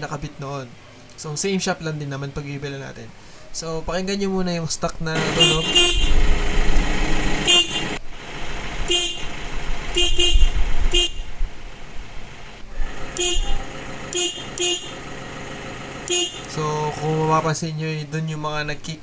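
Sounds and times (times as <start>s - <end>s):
car horn toots: 5.2s - 6.5s, 7.3s - 8.0s, 8.8s - 11.4s, 12.9s - 15.2s, 16.0s - 17.4s
relays clicking: 12.6s - 17.5s.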